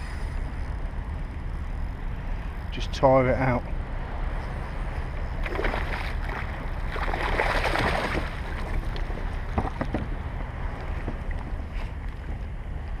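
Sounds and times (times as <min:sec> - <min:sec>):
wind rumble on microphone: 0:00.0 - 0:13.0
water splashing around kayak: 0:04.6 - 0:12.4.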